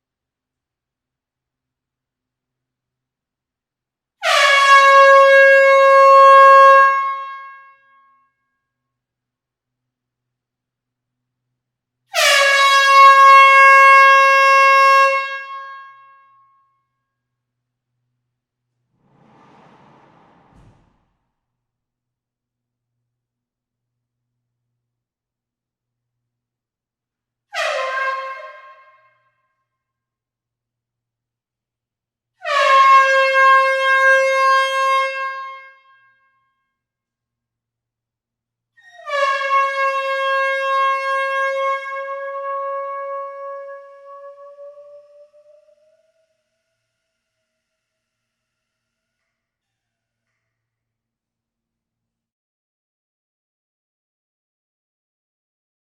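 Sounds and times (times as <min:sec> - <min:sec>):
air horn blast: 0:04.2 - 0:07.7, 0:12.1 - 0:16.1, 0:27.5 - 0:29.1, 0:32.4 - 0:35.9.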